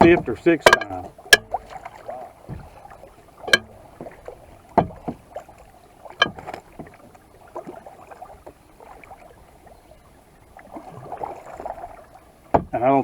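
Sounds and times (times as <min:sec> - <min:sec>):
light taps: 0:00.0 - 0:01.8, 0:03.5 - 0:04.2
sharp knocks: 0:00.0 - 0:01.8, 0:03.5 - 0:05.2, 0:06.2 - 0:06.5, 0:12.5 - 0:12.8
paddle strokes in water: 0:00.0 - 0:13.0.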